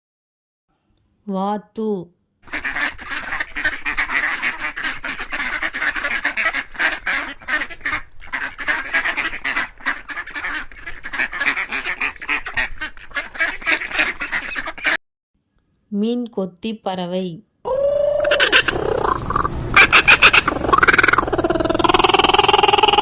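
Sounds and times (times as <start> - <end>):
ducks quacking: 2.4 - 15.0, 17.9 - 23.0.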